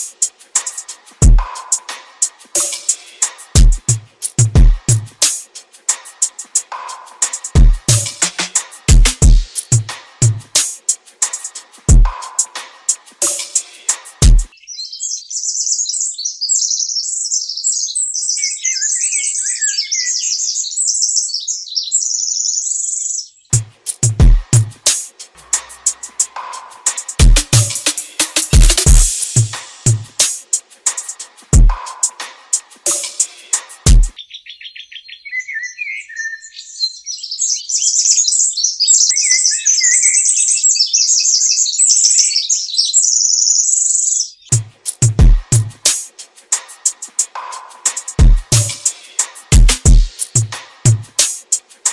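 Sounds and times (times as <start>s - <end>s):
high bird-like chirping: 14.5s - 24.2s, 34.1s - 45.2s.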